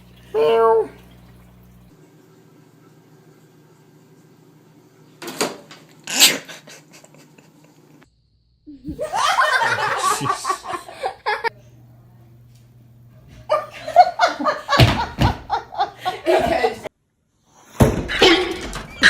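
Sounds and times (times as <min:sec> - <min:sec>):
person laughing: 0:06.4 - 0:07.9, 0:08.8 - 0:11.6.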